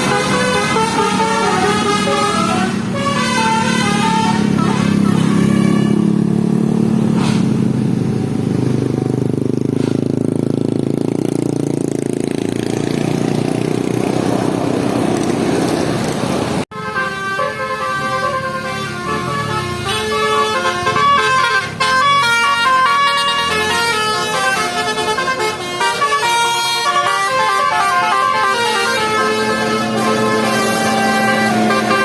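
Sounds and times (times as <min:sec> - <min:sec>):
bus horn melody: 0:00.0 - 0:07.7, 0:16.7 - 0:32.0
large road vehicle rumbling: 0:00.0 - 0:32.0.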